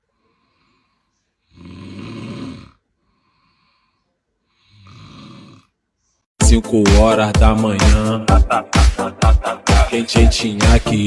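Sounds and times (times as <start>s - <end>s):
faint breath: 0.0s - 1.6s, 2.8s - 5.1s
man snoring: 1.5s - 3.9s, 4.5s - 5.8s.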